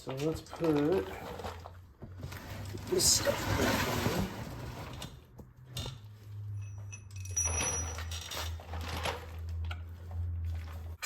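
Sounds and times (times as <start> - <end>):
metal scraping and rattling: 0.0 - 9.9
metal tools clinking: 5.8 - 9.2.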